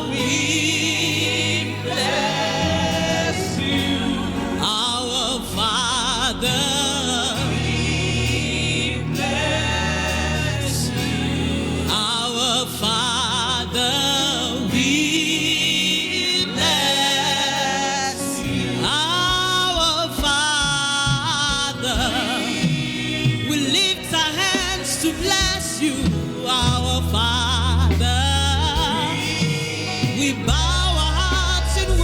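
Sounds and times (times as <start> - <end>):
instrumental accompaniment: 0.0 - 13.0
voices singing with vibrato: 0.0 - 32.0.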